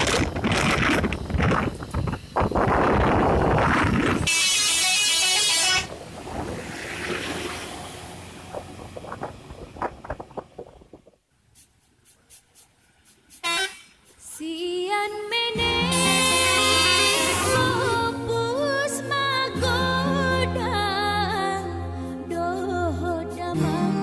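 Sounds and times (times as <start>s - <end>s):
traffic noise: 0.0s - 14.4s
bus horn multi-tone blasts: 4.3s - 5.9s, 13.4s - 14.0s, 15.8s - 18.2s.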